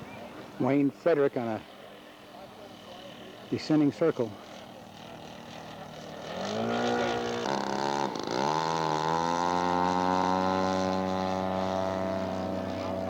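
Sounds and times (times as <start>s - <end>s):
model airplane engine: 0.0s - 13.0s.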